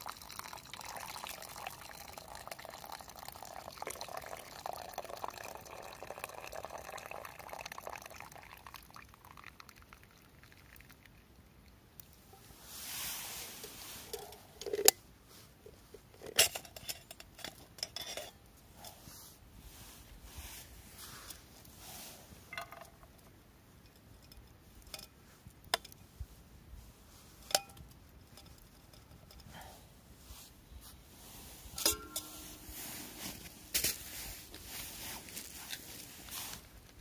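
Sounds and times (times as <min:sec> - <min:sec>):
metal cookware clinking: 0:31.8 - 0:32.8.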